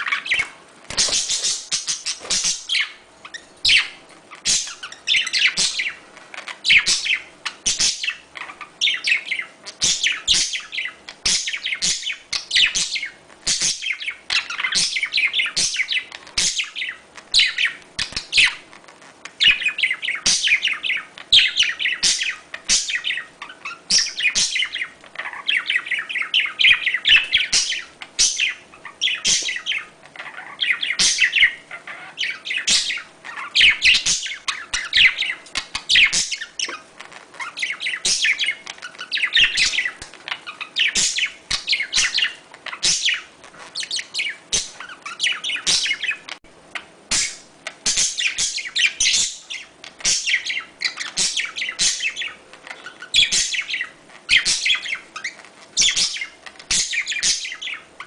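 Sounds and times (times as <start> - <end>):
budgerigars chirping and warbling: 0.0 - 58.0.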